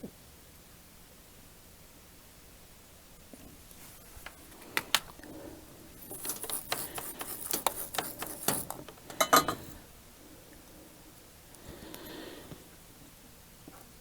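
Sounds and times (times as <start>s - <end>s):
rustling and light clinking: 5.8s - 9.9s
metal tools clicking: 6.0s - 9.8s.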